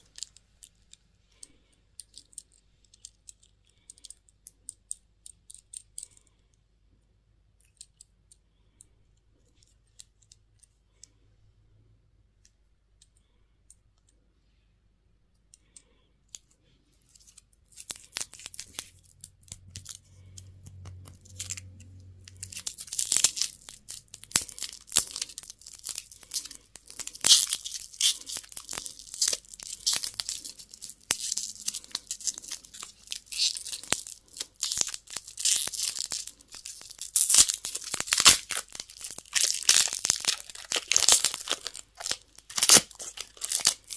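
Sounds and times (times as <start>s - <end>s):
candy wrapper tearing and crinkling: 0.0s - 6.2s, 16.3s - 43.9s.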